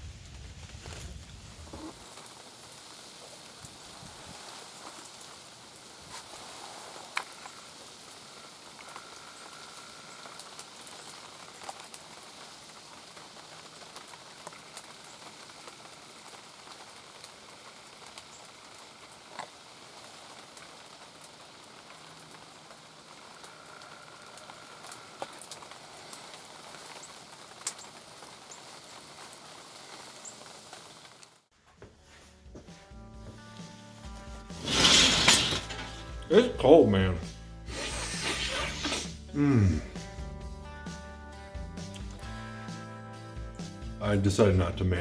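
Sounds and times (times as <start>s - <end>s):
rain pattering: 0.0s - 31.5s, 40.6s - 43.0s, 43.6s - 45.0s.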